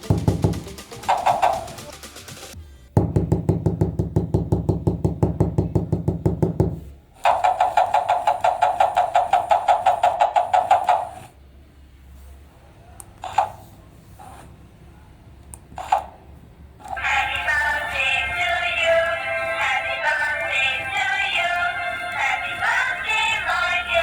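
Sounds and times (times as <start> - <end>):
toy mechanism knocking rapidly: 0.0 - 2.6, 7.2 - 11.3, 13.2 - 13.6, 15.8 - 16.2.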